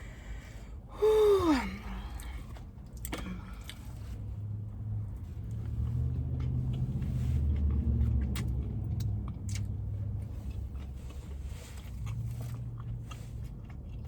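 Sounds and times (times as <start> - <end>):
low vehicle rumble: 0.0 - 14.0.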